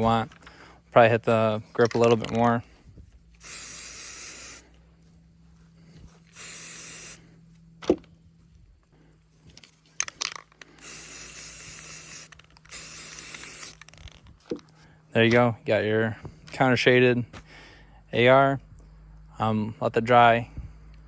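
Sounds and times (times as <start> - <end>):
spray paint can hissing: 3.4 - 4.7, 6.2 - 7.3, 10.7 - 14.1.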